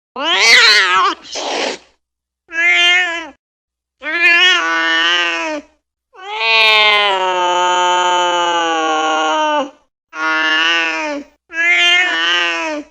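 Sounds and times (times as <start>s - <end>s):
angry cat meowing: 0.2s - 1.3s, 2.5s - 3.4s, 4.0s - 5.6s, 6.2s - 9.6s, 10.2s - 12.9s.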